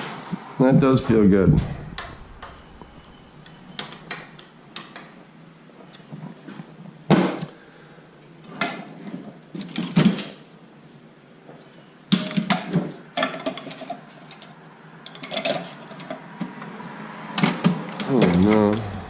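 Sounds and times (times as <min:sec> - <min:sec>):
metal parts and tools clattering: 0:13.2 - 0:14.5, 0:15.1 - 0:16.2.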